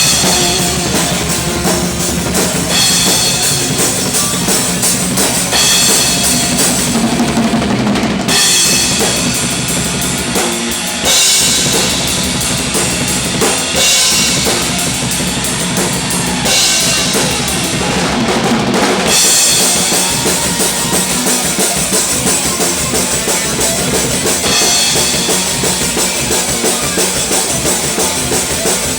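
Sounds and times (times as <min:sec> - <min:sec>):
band jamming loud: 0:00.0 - 0:28.9
drum kit playing: 0:00.0 - 0:28.9.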